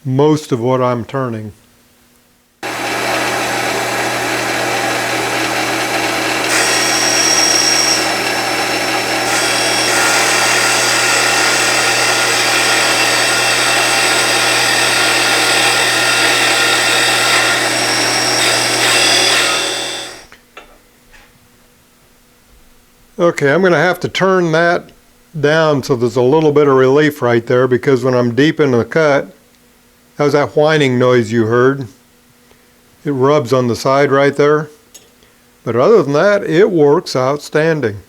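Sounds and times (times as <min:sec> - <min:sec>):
high-pitched cutter whine: 0:02.6 - 0:20.3
lathe cutter cutting wood: 0:02.6 - 0:20.3
motor hum: 0:02.6 - 0:20.3.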